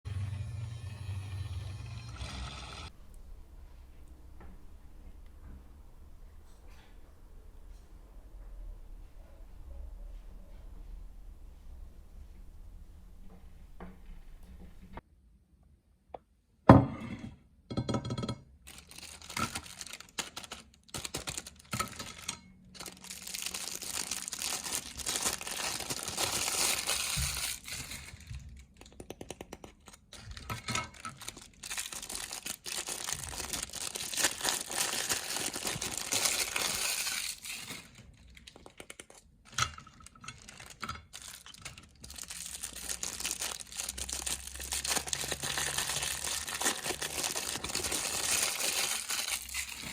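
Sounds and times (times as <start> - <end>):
meringue crunching in meat grinder: 40.7 - 49.9.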